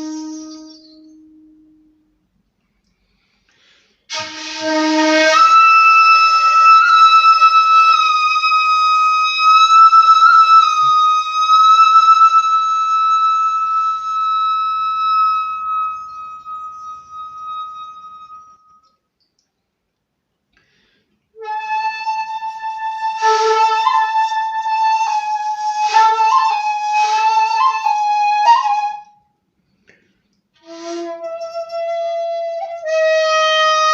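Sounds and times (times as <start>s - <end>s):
bamboo flute playing: 0.0s - 2.1s, 4.1s - 19.0s, 21.4s - 29.3s, 30.6s - 33.9s.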